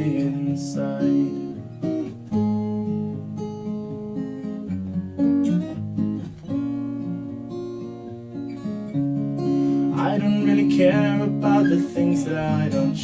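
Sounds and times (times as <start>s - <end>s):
person singing: 0.0s - 1.5s, 9.9s - 13.0s
acoustic guitar strumming: 0.0s - 13.0s.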